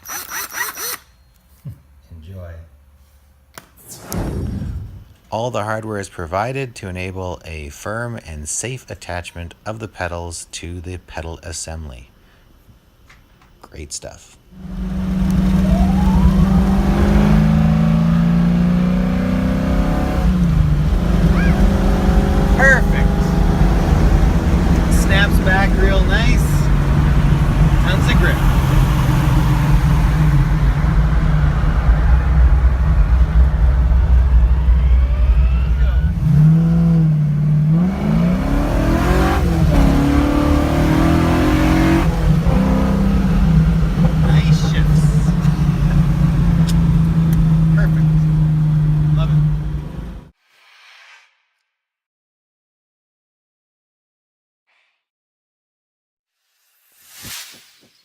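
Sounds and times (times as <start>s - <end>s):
car engine accelerating: 14.5s - 50.3s.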